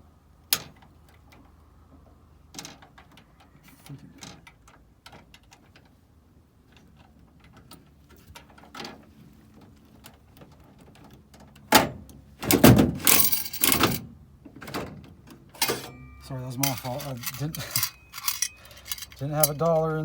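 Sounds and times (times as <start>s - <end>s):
vending machine clunk: 11.8s - 14.0s, 15.6s - 20.0s
vending machine rattling clatter: 11.8s - 15.0s, 15.6s - 20.0s
coins clicking into machine: 13.0s - 14.0s, 15.6s - 20.0s.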